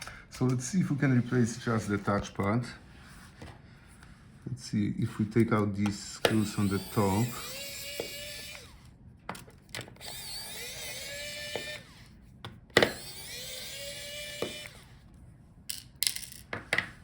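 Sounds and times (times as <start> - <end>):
screwdriver bit and screws clicking: 6.2 - 8.8, 9.7 - 12.0, 12.8 - 14.9
electric screwdriver whining: 6.2 - 8.9, 9.8 - 12.1, 12.8 - 15.0.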